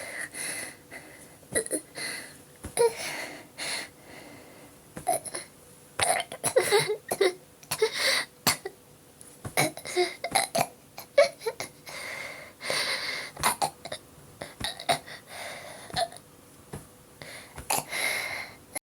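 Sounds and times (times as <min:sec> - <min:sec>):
knocks of belly being tapped: 0:16.0 - 0:16.9.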